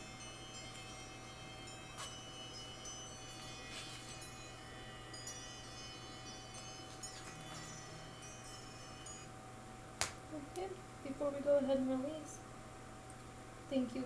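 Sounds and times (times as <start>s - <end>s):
soft chimes ringing: 0.0s - 9.6s.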